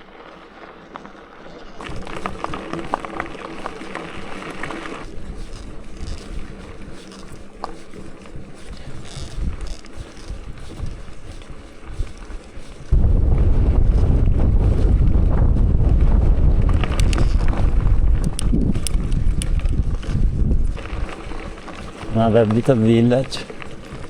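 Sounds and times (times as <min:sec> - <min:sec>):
wind buffeting microphone: 0:08.7 - 0:24.0.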